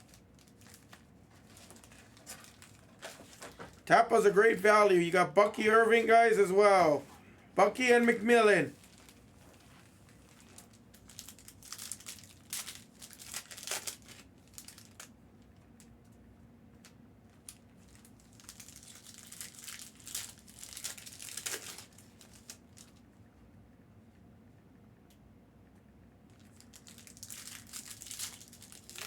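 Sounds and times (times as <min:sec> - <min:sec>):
plastic packaging crinkling: 0:00.0 - 0:07.0, 0:07.6 - 0:15.1, 0:17.4 - 0:23.0, 0:26.3 - 0:29.0.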